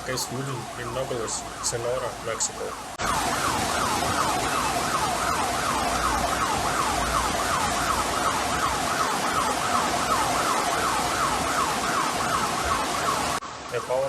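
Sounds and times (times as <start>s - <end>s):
siren in quick falling sweeps: 0.1s - 13.4s
steady rushing hiss: 13.3s - 14.0s.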